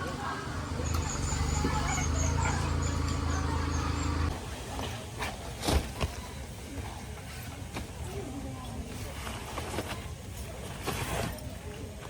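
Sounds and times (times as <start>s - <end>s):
low motor hum: 0.0s - 4.4s.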